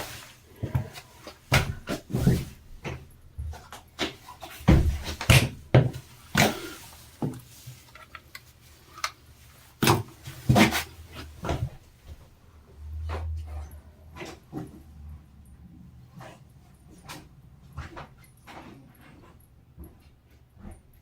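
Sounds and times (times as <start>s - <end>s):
hard objects knocking and clunking: 2.8s - 9.2s.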